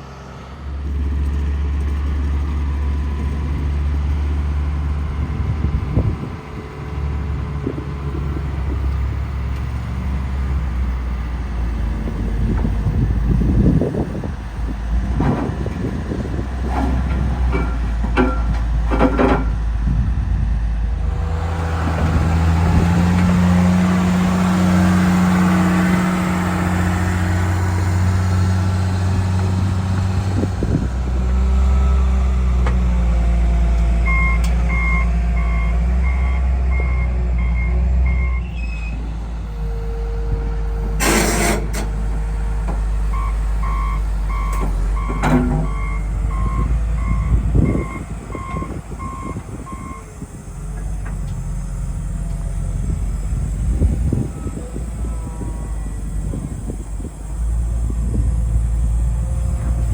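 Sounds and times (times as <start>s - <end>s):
construction machine engine running: 0.0s - 59.9s
reversing alarm beeping: 34.0s - 39.0s, 43.1s - 50.8s.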